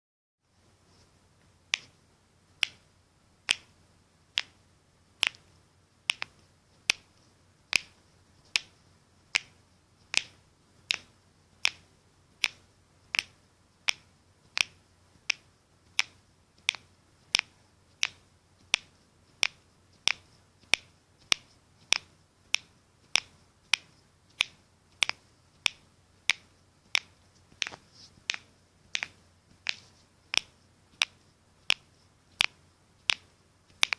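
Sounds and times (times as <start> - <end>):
knuckles cracking: 16.0 - 33.9.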